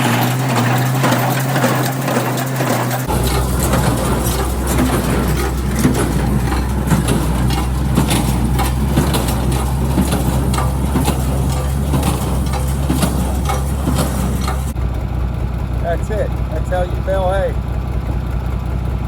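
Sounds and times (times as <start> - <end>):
baler clicking and knocking: 0.0 - 14.8
tractor engine running: 0.0 - 19.0.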